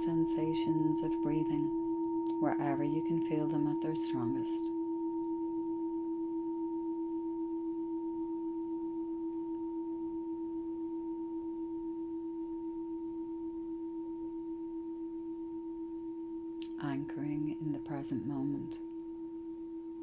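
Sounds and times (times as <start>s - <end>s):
meditation bell ringing: 0.1s - 16.6s.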